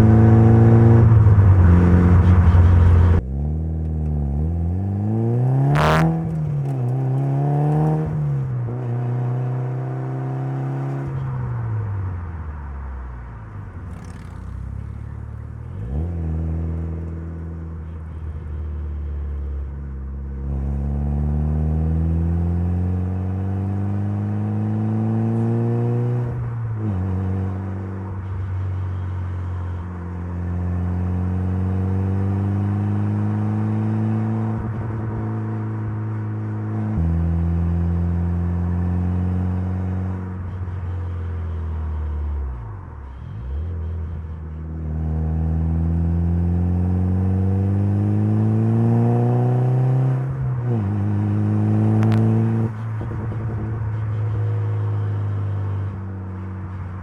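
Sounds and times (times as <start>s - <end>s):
turbocharged car engine revving: 0.0s - 12.3s, 13.2s - 19.7s, 20.3s - 57.0s.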